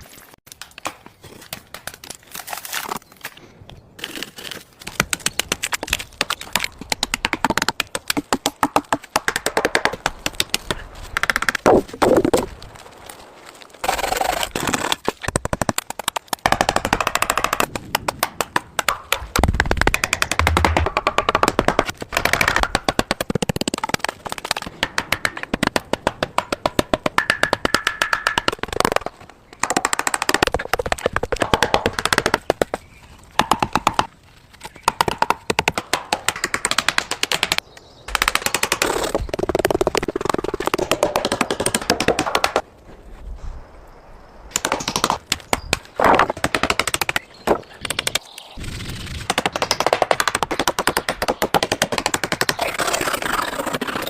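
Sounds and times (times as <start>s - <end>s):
rapid wooden knocks and taps: 5.0s - 12.4s, 15.3s - 32.8s, 34.8s - 42.6s, 46.2s - 48.2s, 49.3s - 52.6s.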